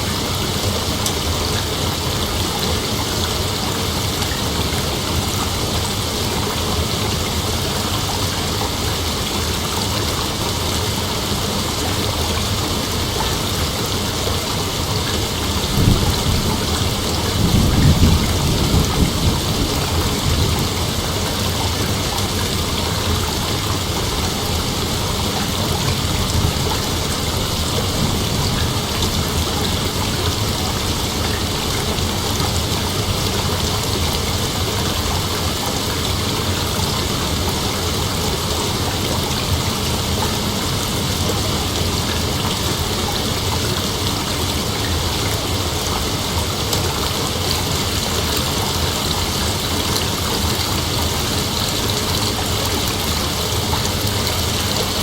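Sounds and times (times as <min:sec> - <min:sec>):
steady rain: 0:00.0 - 0:55.0
thunder rumbling: 0:15.0 - 0:35.2.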